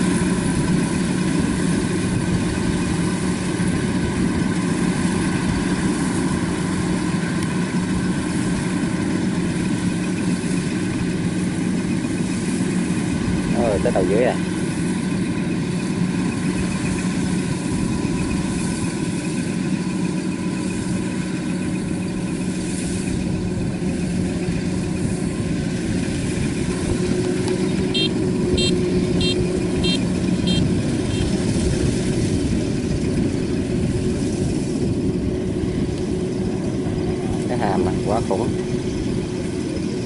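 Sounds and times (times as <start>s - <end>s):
diesel engine running: 0.0s - 40.0s
machine beeper beeping: 27.6s - 31.4s.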